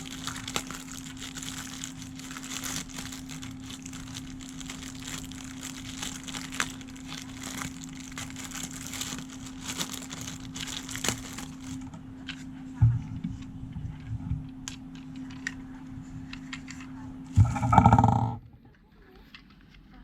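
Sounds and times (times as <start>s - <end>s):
plastic packaging crinkling: 0.0s - 12.0s
steady low hum: 0.0s - 20.0s.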